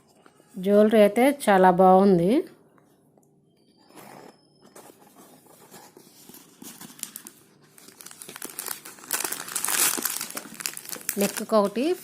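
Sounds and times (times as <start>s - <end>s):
plastic packaging crinkling: 5.5s - 12.0s.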